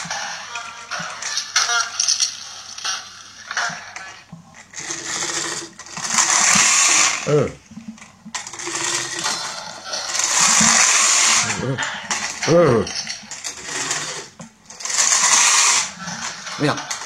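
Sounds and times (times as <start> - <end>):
toy friction motor whirring: 0.0 - 7.6, 8.3 - 17.0.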